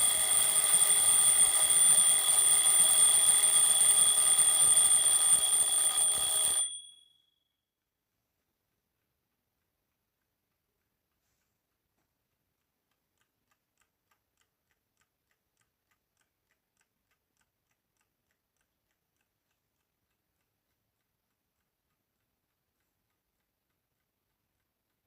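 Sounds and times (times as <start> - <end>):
clock ticking: 8.3 - 25.0.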